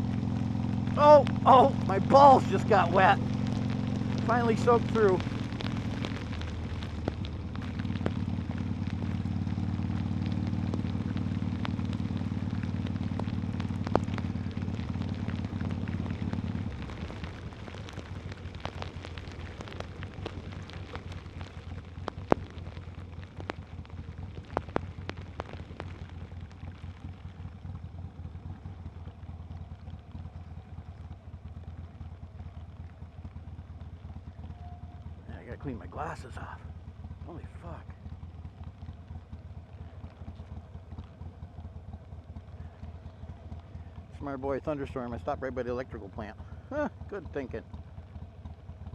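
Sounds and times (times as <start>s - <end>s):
heavy rain: 0.0s - 31.0s
motorcycle engine running: 0.0s - 48.9s
raindrops clicking on microphone: 0.0s - 48.9s.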